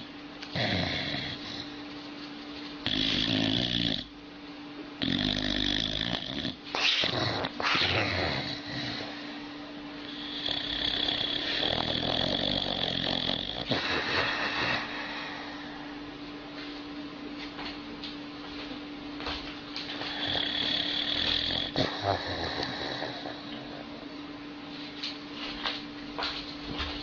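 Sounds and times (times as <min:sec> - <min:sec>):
steady low hum: 0:00.0 - 0:27.0
dog snoring: 0:00.5 - 0:01.8, 0:02.8 - 0:04.1, 0:05.0 - 0:15.8, 0:19.9 - 0:24.1.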